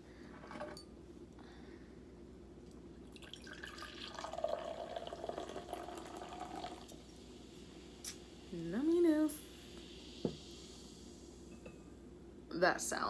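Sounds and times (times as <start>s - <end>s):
wine pouring into a glass: 3.1s - 7.2s.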